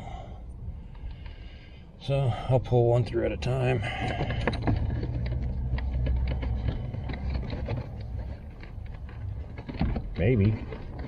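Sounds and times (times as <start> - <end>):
electrical wires clicking and rustling: 2.9 - 11.0.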